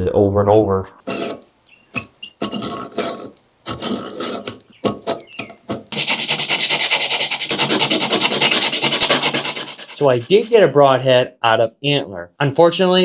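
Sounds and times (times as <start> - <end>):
file scraping antler: 1.0 - 10.6.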